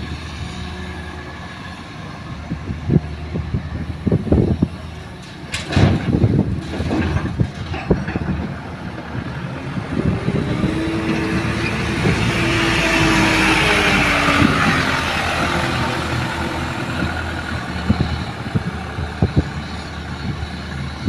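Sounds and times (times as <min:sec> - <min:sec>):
excavator engine and hydraulics whine: 0:00.0 - 0:21.0
excavator bucket clanking: 0:05.2 - 0:09.1.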